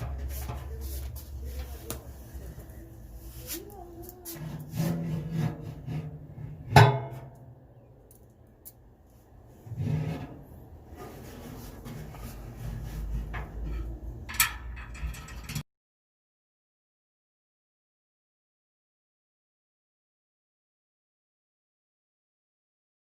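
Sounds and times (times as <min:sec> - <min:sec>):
metal parts knocking and scraping: 0:11.4 - 0:15.6.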